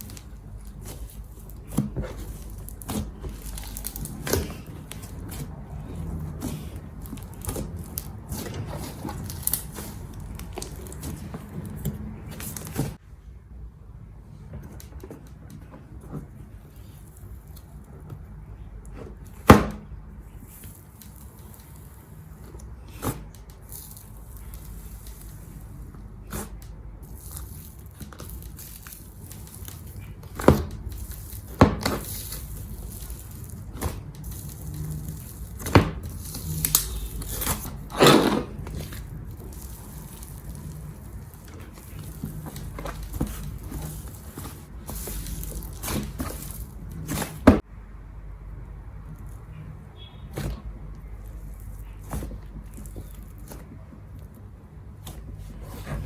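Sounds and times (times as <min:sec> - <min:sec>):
slime popping and crackling: 0:00.0 - 0:13.0, 0:22.7 - 0:47.6.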